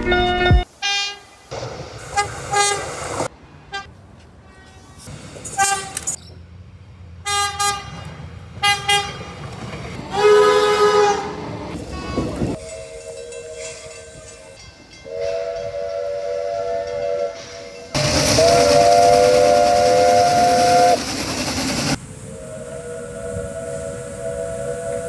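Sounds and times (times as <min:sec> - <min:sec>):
train horn toots and blast: 0:00.0 - 0:01.4, 0:02.1 - 0:03.0, 0:05.6 - 0:06.2, 0:07.2 - 0:08.0, 0:08.6 - 0:09.2, 0:10.1 - 0:14.4, 0:15.0 - 0:21.0, 0:22.3 - 0:25.0
low rumble of train: 0:00.0 - 0:25.0.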